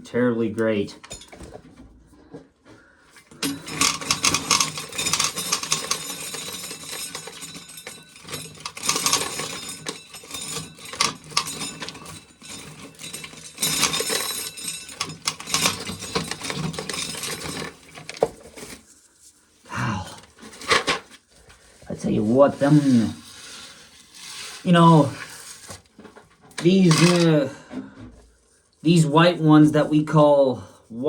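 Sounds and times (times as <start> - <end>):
corn sheller rattling clatter: 3.3 - 18.9, 20.0 - 21.2, 26.6 - 27.5.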